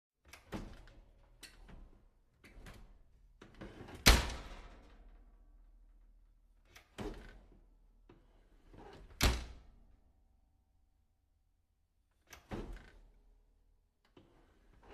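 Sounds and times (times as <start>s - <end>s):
door slamming shut: 4.0s - 4.8s.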